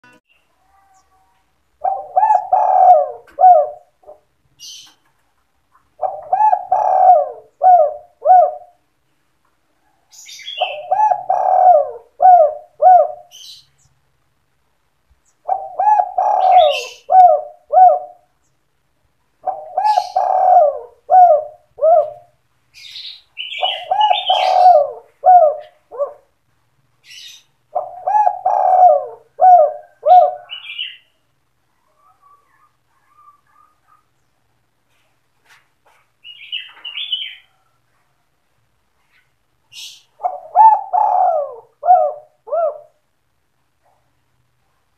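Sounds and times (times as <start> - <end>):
dove cooing: 0.6 - 4.3, 5.8 - 8.8, 10.2 - 13.6, 15.4 - 18.3, 19.4 - 22.4, 23.4 - 26.3, 27.2 - 34.1, 39.8 - 43.0.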